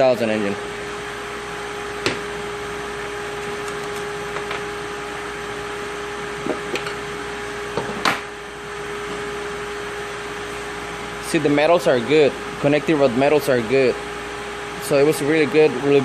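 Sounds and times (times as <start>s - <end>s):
steady hum: 0.0s - 16.0s.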